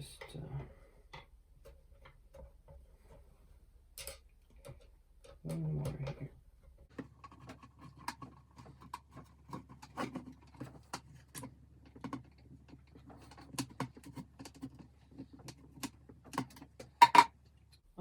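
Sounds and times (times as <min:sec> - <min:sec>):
plastic parts clicking and tapping: 0:04.0 - 0:17.8.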